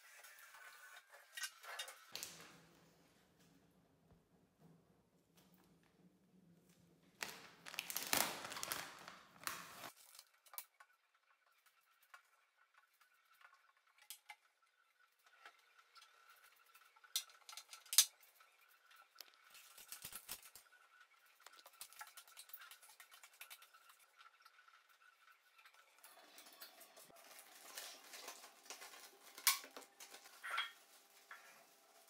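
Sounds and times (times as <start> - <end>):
items rustling: 7.2 - 10.5, 26.8 - 32.0.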